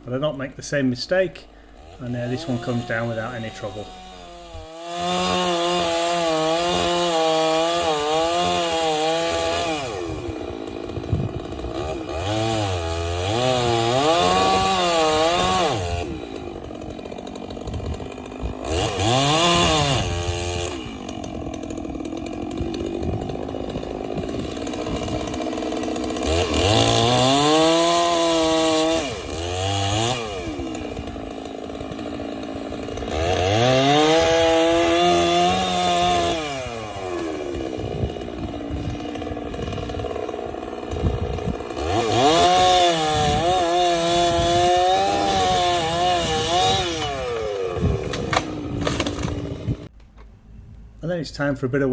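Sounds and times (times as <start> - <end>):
chainsaw engine revving: 0.0 - 49.9.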